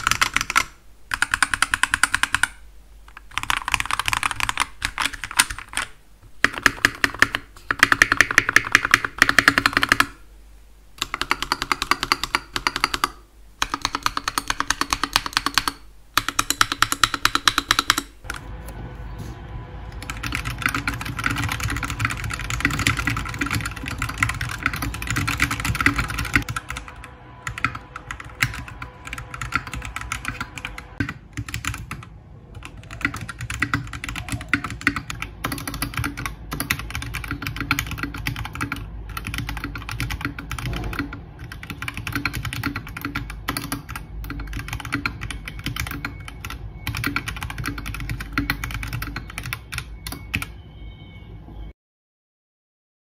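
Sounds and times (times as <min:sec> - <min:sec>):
typing on mechanical keyboard: 0:00.0 - 0:10.2, 0:11.0 - 0:18.4, 0:20.0 - 0:50.6.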